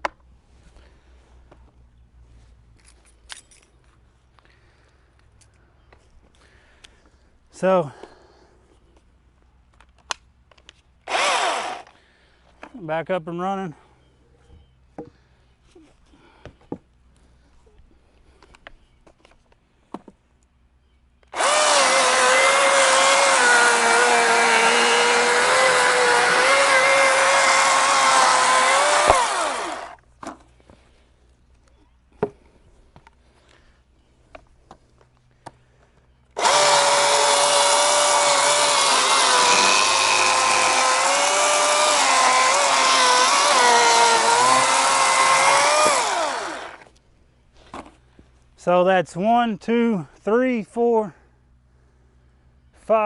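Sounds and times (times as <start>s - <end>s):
chainsaw cutting wood: 11.0s - 12.0s, 21.3s - 30.0s, 36.4s - 46.9s.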